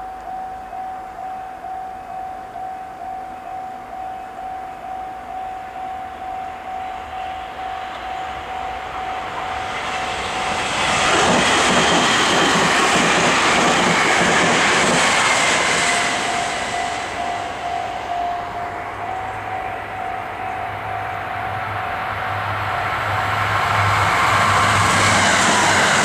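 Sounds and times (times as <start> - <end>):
level crossing warning bell: 0.0 - 10.6, 12.2 - 23.5
train passing: 0.0 - 26.0
train wheels clacking on rail joints: 9.1 - 17.7.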